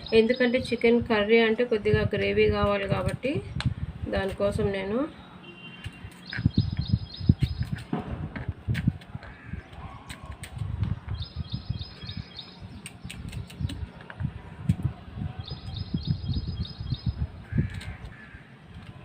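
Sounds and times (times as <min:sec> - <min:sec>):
bird chirping: 0:00.0 - 0:01.0, 0:05.1 - 0:07.9, 0:10.8 - 0:14.0, 0:15.4 - 0:17.3.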